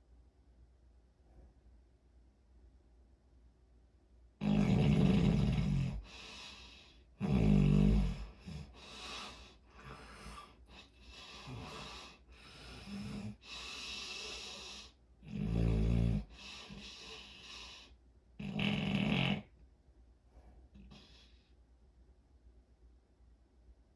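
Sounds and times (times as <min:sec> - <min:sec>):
loud low snores: 0:04.4 - 0:06.4, 0:07.2 - 0:10.5, 0:11.2 - 0:19.5
soft breathing: 0:05.9 - 0:07.2, 0:08.1 - 0:15.1, 0:16.2 - 0:18.1, 0:20.2 - 0:21.8.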